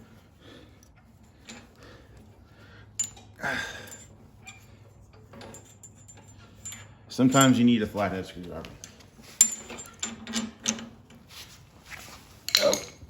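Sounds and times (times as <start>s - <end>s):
small metal parts clicking: 3.0s - 7.6s, 12.5s - 13.0s
scraping rustle: 11.1s - 12.6s.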